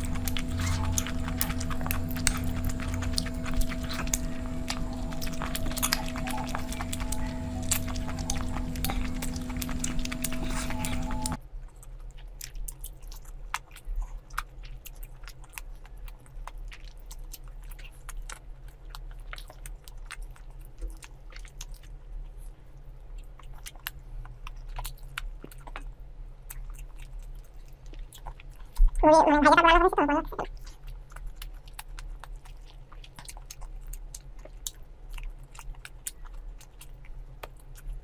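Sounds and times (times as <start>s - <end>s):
steady sound with held tones: 0.0s - 11.4s
crunchy chewing and biting: 0.0s - 29.0s, 30.4s - 38.0s.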